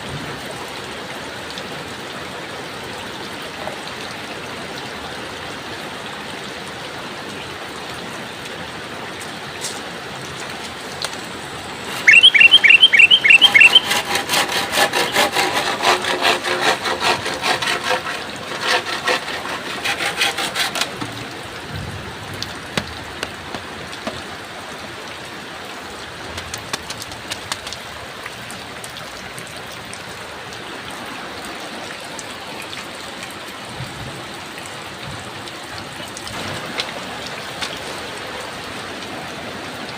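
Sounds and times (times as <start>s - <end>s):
heavy rain falling: 0.0s - 39.9s
quick rising chirps: 11.8s - 13.9s.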